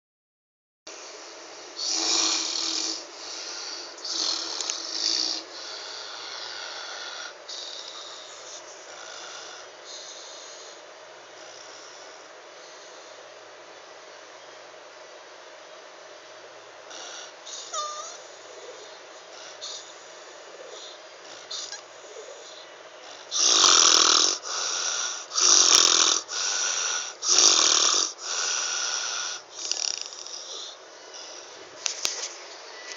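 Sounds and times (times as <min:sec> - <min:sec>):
person snoring: 0:01.8 - 0:10.8, 0:20.5 - 0:31.6
faint breathing: 0:02.9 - 0:13.4, 0:24.3 - 0:25.4, 0:26.2 - 0:32.9.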